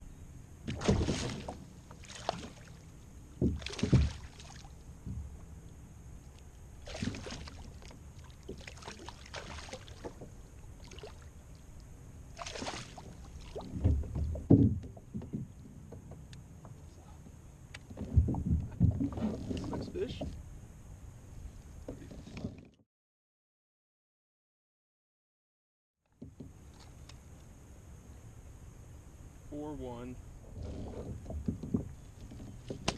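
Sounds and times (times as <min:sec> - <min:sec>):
water splashing and handling: 0:00.7 - 0:04.8, 0:06.3 - 0:11.7, 0:12.3 - 0:15.8, 0:17.8 - 0:20.3
low knocks against kayak hull: 0:03.4 - 0:04.3, 0:05.0 - 0:05.4, 0:13.0 - 0:16.8, 0:17.8 - 0:20.4, 0:30.5 - 0:32.9.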